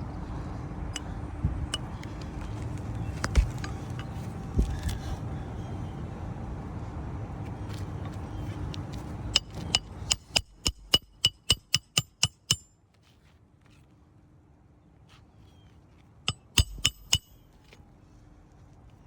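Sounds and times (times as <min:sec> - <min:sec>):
hammer striking roofing nail: 0:16.3 - 0:17.4.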